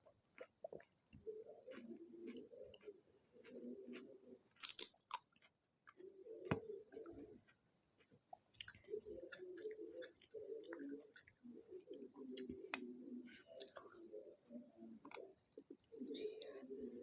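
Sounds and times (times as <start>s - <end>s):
person chewing wetly: 0.0s - 6.0s, 7.0s - 14.0s
crisp shells crunching: 4.6s - 5.3s.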